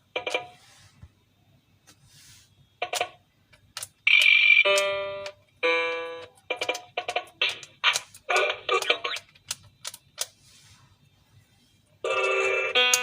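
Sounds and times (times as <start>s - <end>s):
toy laptop electronic notes: 4.1s - 9.3s, 12.0s - 13.0s.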